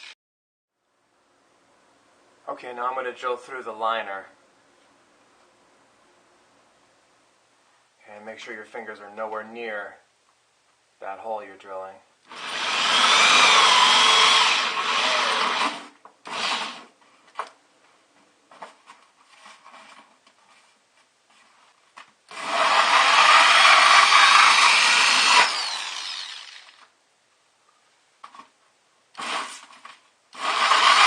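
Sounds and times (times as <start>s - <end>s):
power drill with hole saw: 12.3s - 16.9s, 22.3s - 26.9s, 29.2s - 31.0s.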